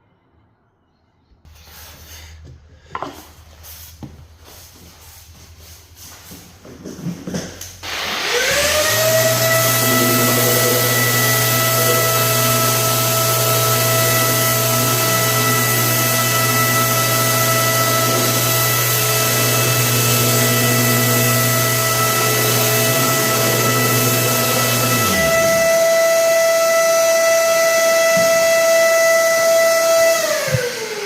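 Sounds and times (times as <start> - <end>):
orbital sander whining: 7.8 - 31.0.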